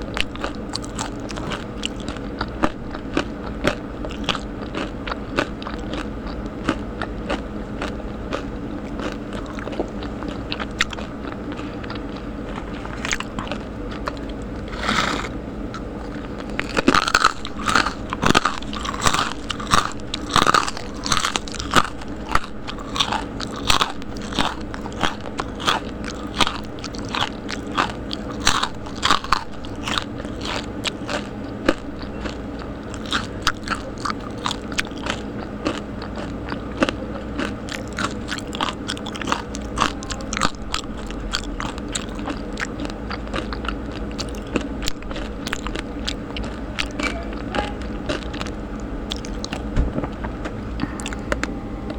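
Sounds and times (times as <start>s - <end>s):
person chewing crispy snacks: 0.0s - 51.9s.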